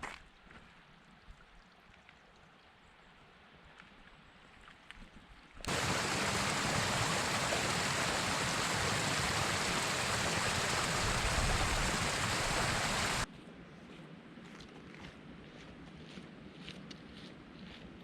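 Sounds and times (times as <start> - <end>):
stream water rushing: 5.7 - 13.3.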